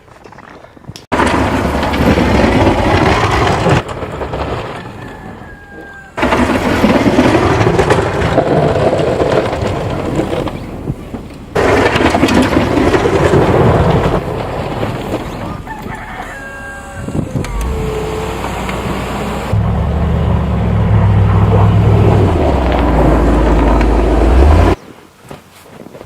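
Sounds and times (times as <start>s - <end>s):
rooster crowing: 4.8s - 6.2s, 15.5s - 18.3s.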